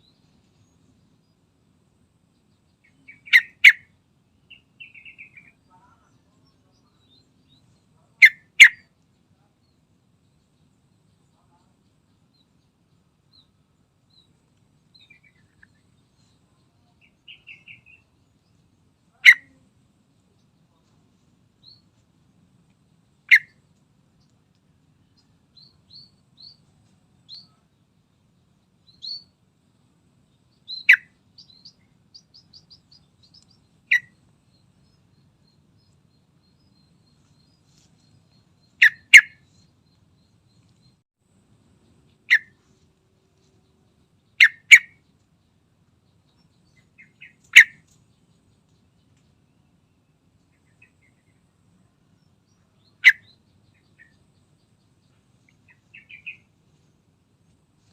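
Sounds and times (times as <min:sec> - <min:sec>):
soft high chirps and trills: 0:00.0 - 0:57.9
bird short sharp calls: 0:03.1 - 0:03.9, 0:38.8 - 0:39.5, 0:47.0 - 0:47.9.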